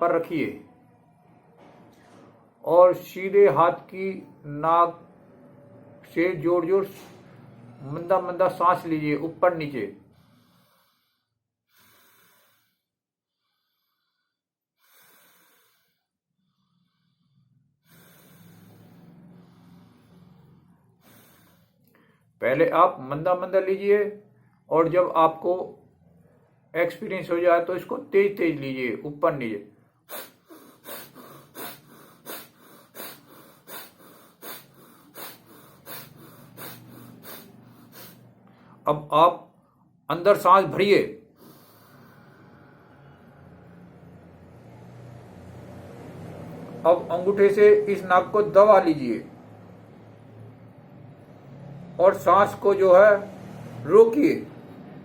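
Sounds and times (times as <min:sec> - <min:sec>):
breathing through nostril: 0:10.0 - 0:22.4, 0:29.8 - 0:38.8, 0:41.2 - 0:45.8.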